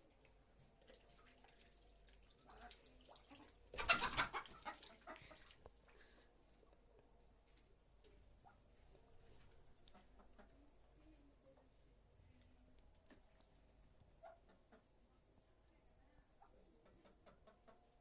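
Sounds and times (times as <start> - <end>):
chickens clucking: 3.4 - 5.6, 9.8 - 10.7, 14.2 - 15.0, 16.4 - 18.0.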